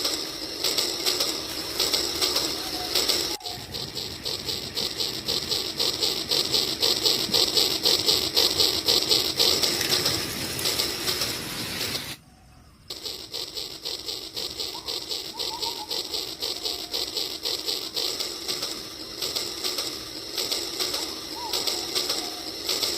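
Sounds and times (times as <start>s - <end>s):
toy train motor whirring: 0.0s - 12.2s, 12.8s - 22.9s.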